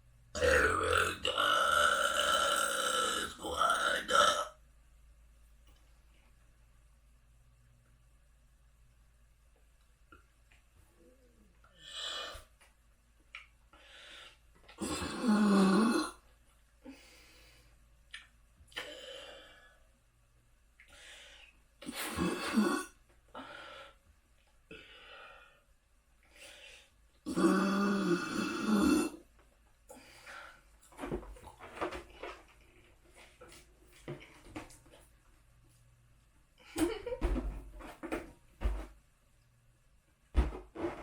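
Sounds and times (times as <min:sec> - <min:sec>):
person burping: 0:00.4 - 0:04.6, 0:14.8 - 0:16.2, 0:21.8 - 0:23.0, 0:27.3 - 0:29.2.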